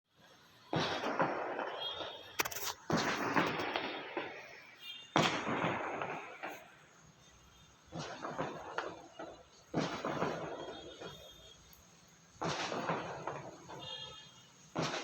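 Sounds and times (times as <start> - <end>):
thunder cracks rumbling: 0.7 - 6.9, 7.9 - 11.7, 12.3 - 13.9, 14.8 - 15.0.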